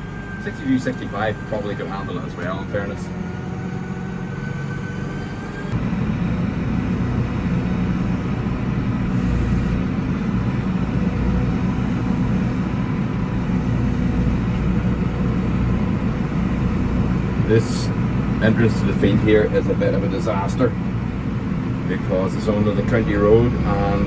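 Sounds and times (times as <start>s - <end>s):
tractor engine running: 0.0s - 24.0s.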